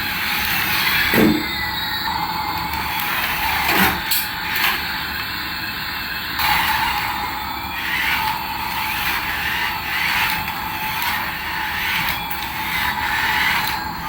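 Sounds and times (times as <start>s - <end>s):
toy aircraft whirring: 0.0s - 14.0s.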